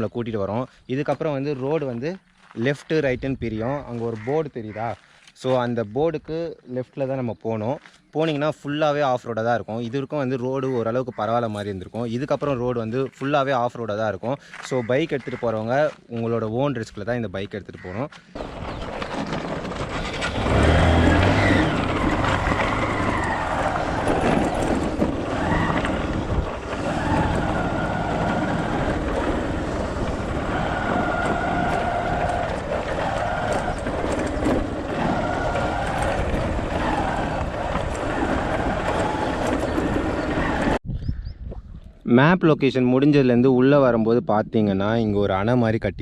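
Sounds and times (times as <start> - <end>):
motorcycle engine revving: 18.4 - 40.8.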